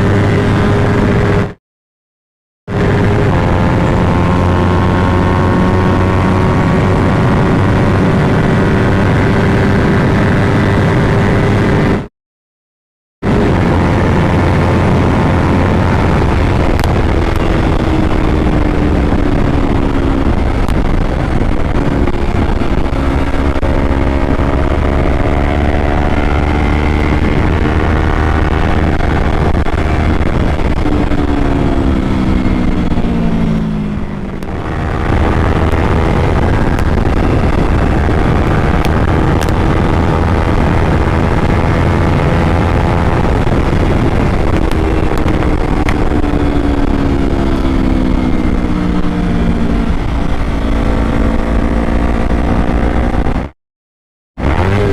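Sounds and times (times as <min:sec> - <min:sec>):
steady rush of noise: 0:13.2 - 0:53.5, 0:54.4 - 0:54.9.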